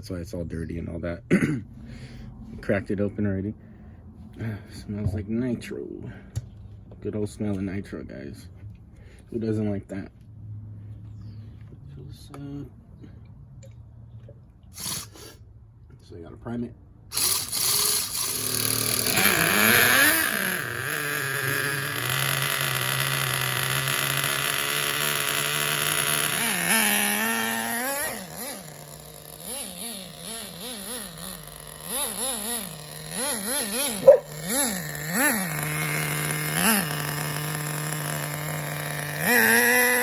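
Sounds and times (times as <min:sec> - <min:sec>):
small rc car engine idling and revving: 0:14.7 - 0:15.4, 0:17.1 - 0:40.0.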